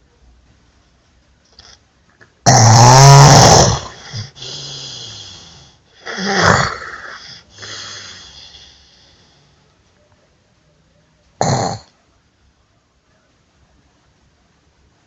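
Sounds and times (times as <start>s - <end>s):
person snoring loudly: 2.5s - 8.8s, 11.4s - 11.9s
quiet breaths: 3.9s - 11.3s.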